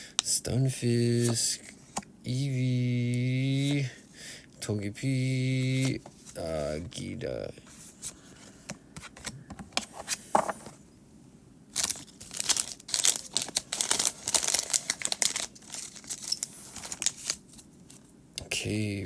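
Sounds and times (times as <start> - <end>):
foil wrapper crinkling and tearing: 11.7 - 18.0.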